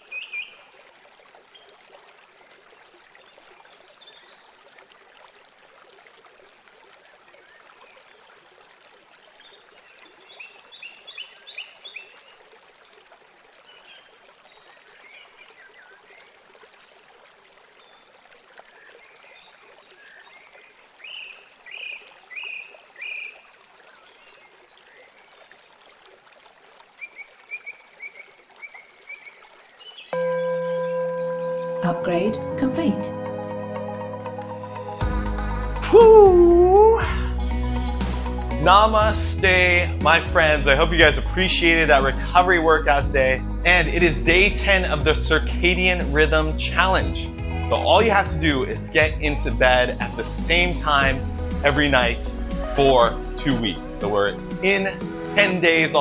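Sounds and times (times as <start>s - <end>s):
running water: 0.0s - 56.0s.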